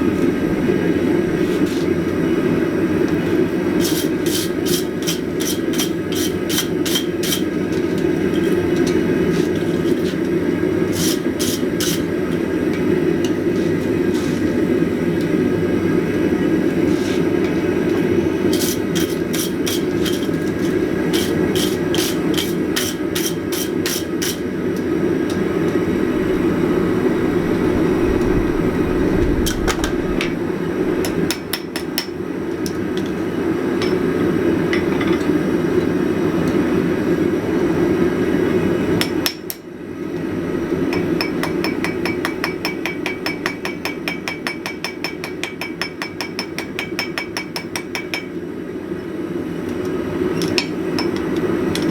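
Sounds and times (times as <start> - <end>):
forge noise: 25.2 - 32.2
hammer ringing on anvil: 40.9 - 48.3.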